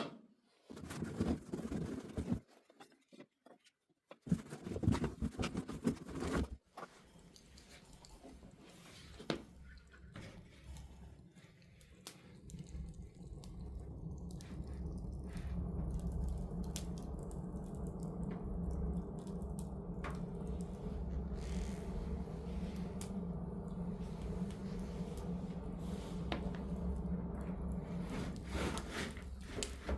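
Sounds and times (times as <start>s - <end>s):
low rumble of flames: 8.0s - 29.9s
wood fire crackling and popping: 11.8s - 29.9s.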